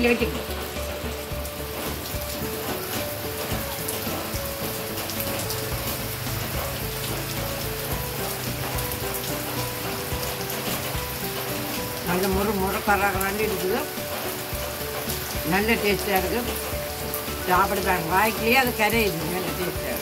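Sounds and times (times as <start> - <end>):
rain falling: 0.0 - 20.0
soft background music: 0.0 - 20.0.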